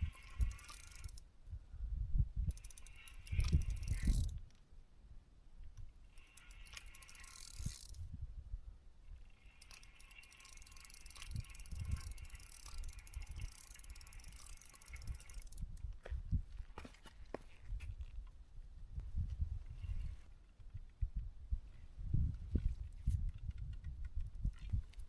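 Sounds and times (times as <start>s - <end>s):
fishing reel ratchety whirr: 0.0s - 1.2s, 2.4s - 4.4s, 6.0s - 8.1s, 9.1s - 15.9s.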